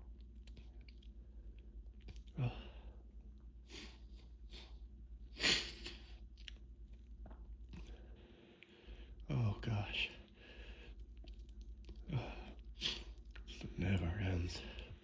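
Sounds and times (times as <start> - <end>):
sniffles and breathing: 3.6 - 6.2.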